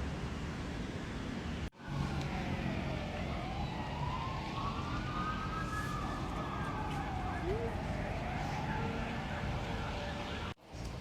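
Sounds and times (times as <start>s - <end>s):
city traffic rumble: 0.0s - 11.0s
distant siren wailing: 1.8s - 10.6s.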